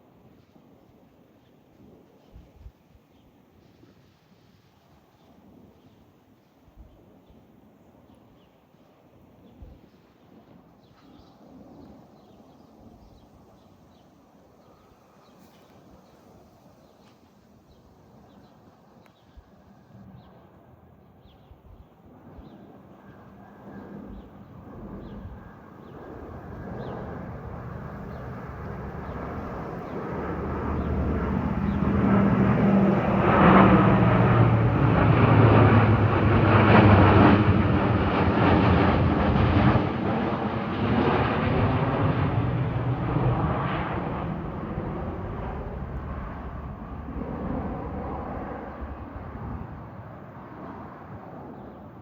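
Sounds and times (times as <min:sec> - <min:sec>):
jet aircraft passing low: 0:22.0 - 0:52.0.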